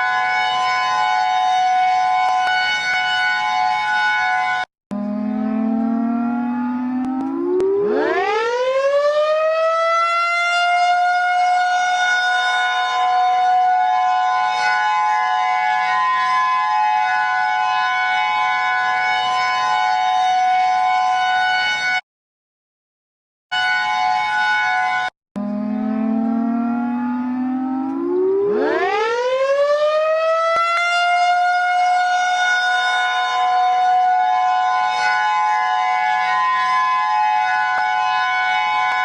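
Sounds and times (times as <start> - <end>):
emergency alert siren wailing: 0.0 - 22.0, 23.5 - 39.0.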